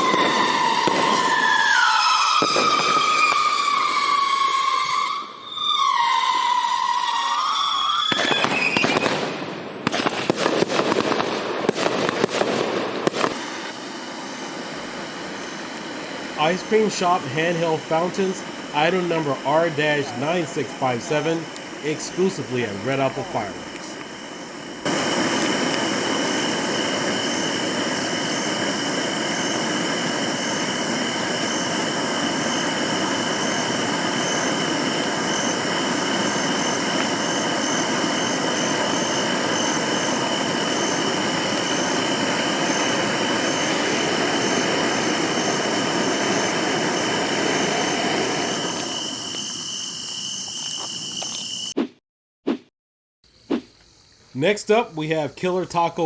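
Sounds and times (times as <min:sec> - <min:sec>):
firework fountain hissing: 0:00.0 - 0:51.8
constant high tone: 0:14.5 - 0:51.8.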